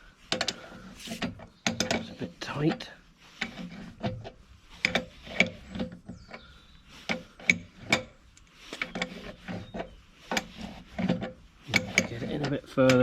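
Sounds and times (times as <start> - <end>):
spanners clicking on metal: 11.1 - 13.0.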